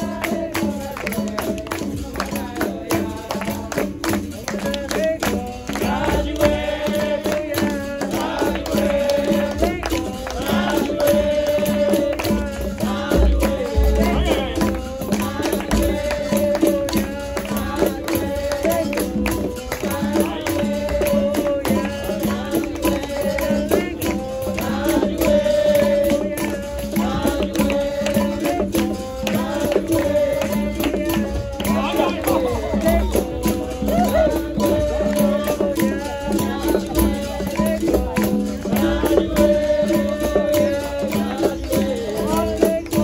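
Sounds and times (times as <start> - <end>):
berimbau percussion ensemble: 0.0 - 43.0
voices singing: 0.0 - 43.0.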